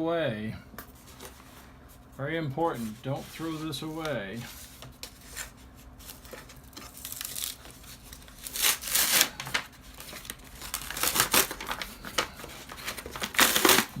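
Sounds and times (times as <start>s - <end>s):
cardboard and paper packaging tearing: 5.0s - 14.0s.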